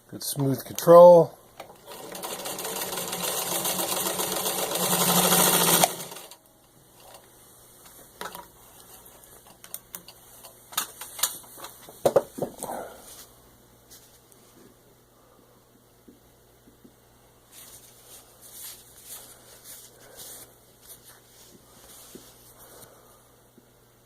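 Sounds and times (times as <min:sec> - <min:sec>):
sewing machine running fast: 0:01.8 - 0:06.4.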